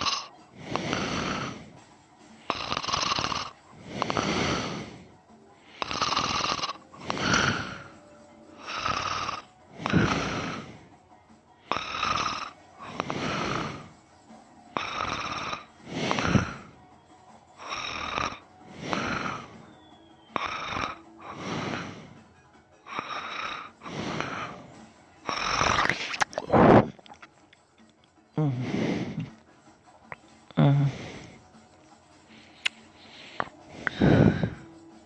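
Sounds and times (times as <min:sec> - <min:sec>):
man snoring loudly: 0:00.0 - 0:01.7, 0:02.5 - 0:05.1, 0:05.8 - 0:08.0, 0:08.6 - 0:10.9, 0:11.7 - 0:13.9, 0:14.8 - 0:16.8, 0:17.6 - 0:19.7, 0:20.4 - 0:22.2, 0:22.9 - 0:24.7, 0:25.3 - 0:25.9, 0:33.8 - 0:34.7.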